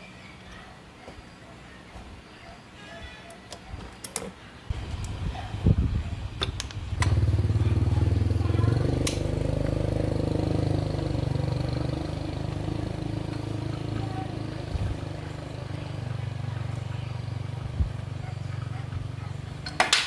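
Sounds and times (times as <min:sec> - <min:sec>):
motorcycle engine running: 0:04.7 - 0:19.9
sharp clicks: 0:09.0 - 0:09.3.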